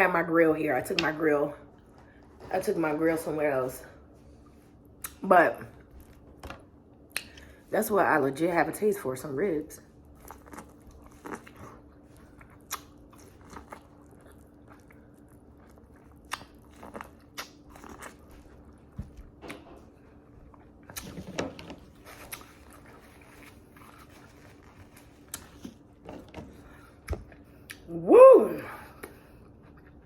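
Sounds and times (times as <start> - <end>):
biting crunching and chewing: 10.1 - 18.9, 21.8 - 25.8.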